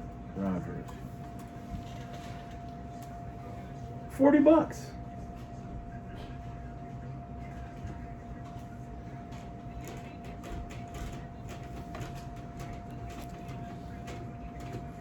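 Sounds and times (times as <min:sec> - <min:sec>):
steady electrical hum: 0:00.0 - 0:15.0.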